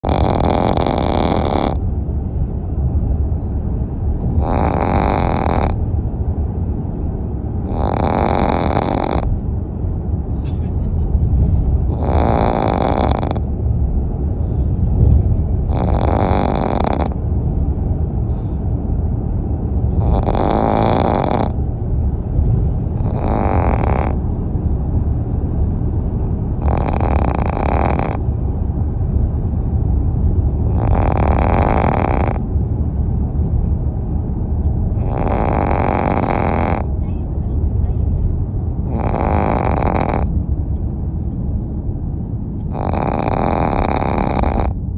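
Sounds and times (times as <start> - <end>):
puppy snoring: 0.0 - 2.0, 3.2 - 6.4, 7.4 - 9.4, 10.4 - 17.2, 18.2 - 18.7, 19.9 - 24.8, 25.5 - 28.3, 30.4 - 32.6, 34.7 - 37.3, 38.7 - 40.9, 42.5 - 44.9
steady low rumble: 0.0 - 44.9.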